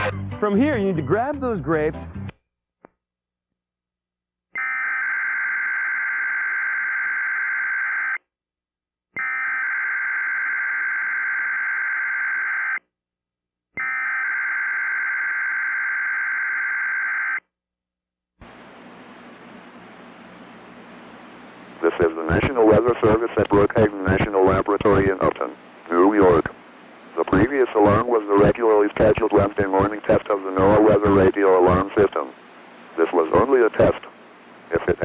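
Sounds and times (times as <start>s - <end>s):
radio hiss with low hum: 18.4s - 35.0s.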